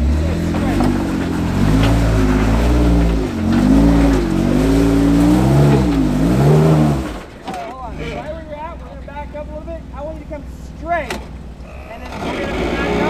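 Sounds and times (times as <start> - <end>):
engine revving: 0.0 - 8.5, 11.6 - 13.0.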